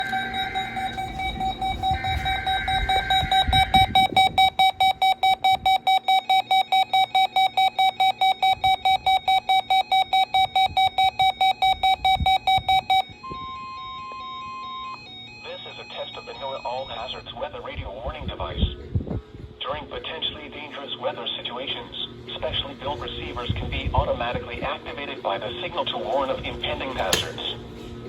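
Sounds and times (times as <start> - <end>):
warbling data tones: 0.0 - 13.1
steady alarm tone: 0.0 - 17.2
rapid electronic alarm beeping: 0.0 - 17.3.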